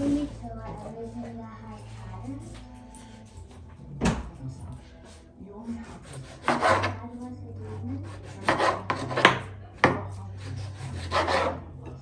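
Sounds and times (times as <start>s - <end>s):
knife cutting on wooden board: 5.8s - 7.0s, 7.7s - 11.6s.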